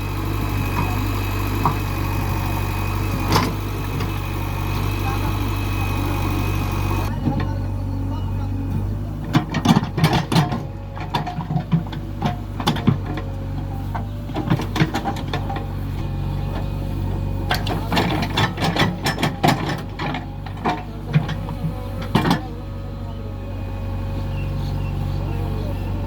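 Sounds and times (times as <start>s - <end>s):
diesel engine running under load: 0.0s - 26.0s
metal clanks of digger bucket: 3.1s - 4.1s, 9.2s - 15.8s, 17.4s - 22.6s.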